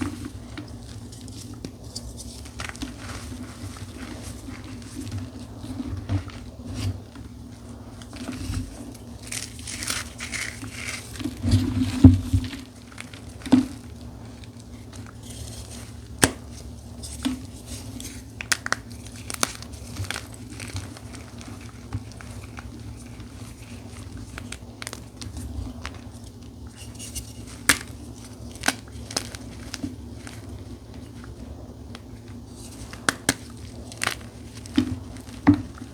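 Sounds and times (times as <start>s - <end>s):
chalk crunching and crumbling: 0.0s - 35.9s
chalk snapping: 14.4s - 26.1s, 26.7s - 35.8s.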